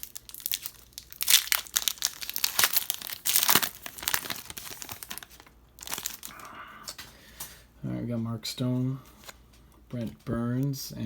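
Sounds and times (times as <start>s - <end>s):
foil wrapper crinkling and tearing: 0.0s - 6.5s.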